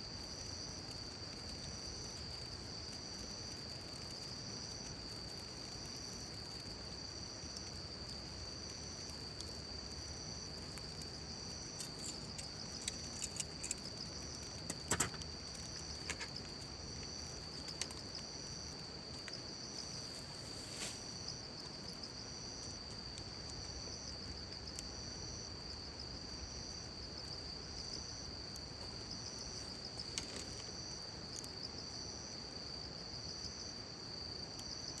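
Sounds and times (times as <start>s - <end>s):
sharp clicks: 11.8s - 16.5s.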